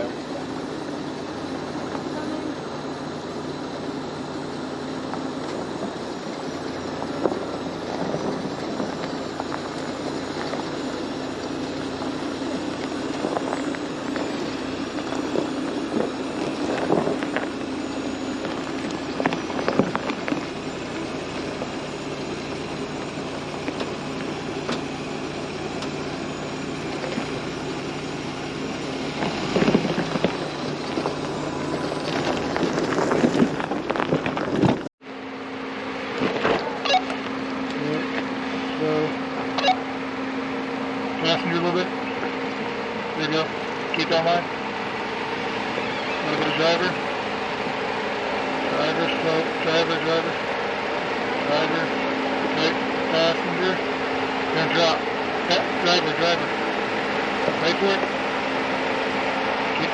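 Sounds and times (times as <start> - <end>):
vehicle engine drone: 0.0 - 59.9
tyre and body noise: 29.2 - 34.9.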